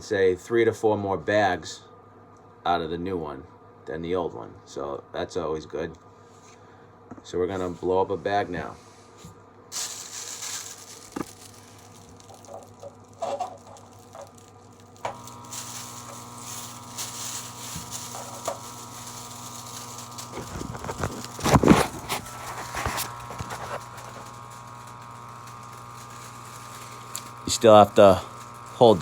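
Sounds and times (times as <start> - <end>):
air pump humming: 8.6 - 29.0.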